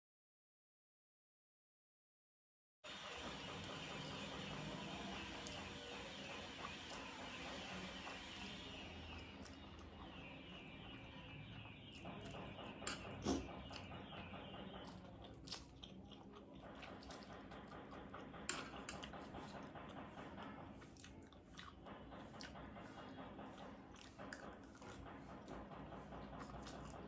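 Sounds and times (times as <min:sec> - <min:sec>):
person chewing noodles: 0:09.2 - 0:10.0, 0:12.2 - 0:13.9, 0:14.6 - 0:18.0, 0:20.8 - 0:22.9, 0:23.9 - 0:25.4, 0:26.4 - 0:27.0.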